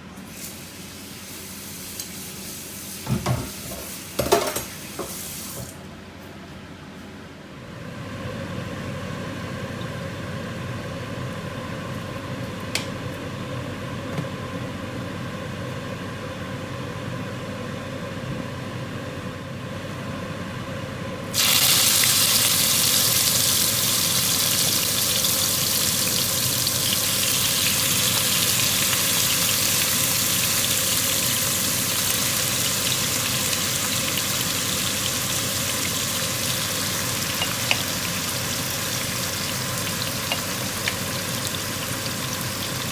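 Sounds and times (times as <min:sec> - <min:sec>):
low background hum: 0:00.0 - 0:42.9
food sizzling in hot oil: 0:21.4 - 0:42.9.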